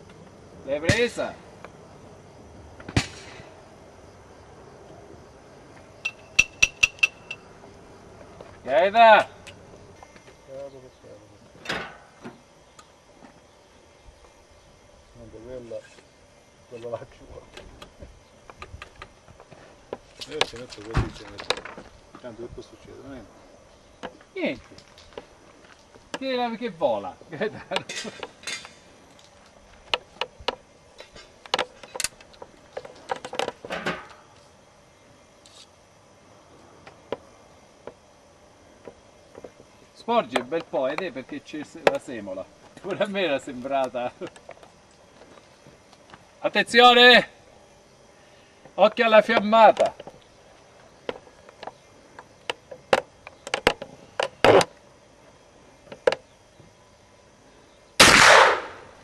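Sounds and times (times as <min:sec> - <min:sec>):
faint hiss: 0:00.0 - 0:53.0
sharp clicks and light knocks: 0:06.0 - 0:07.4, 0:17.5 - 0:22.3, 0:27.7 - 0:34.5, 0:51.0 - 0:54.8, 0:55.8 - 0:56.3
small handling noises: 0:16.8 - 0:23.0.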